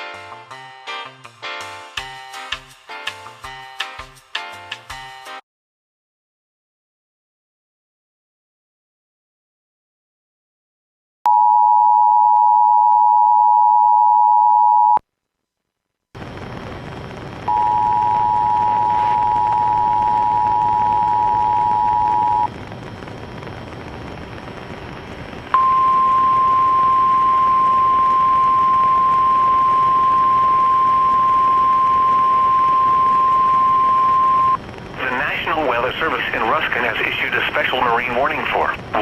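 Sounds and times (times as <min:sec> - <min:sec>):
radio hiss: 0:16.2 - 0:39.0
steady warning alarm tone: 0:17.5 - 0:22.5.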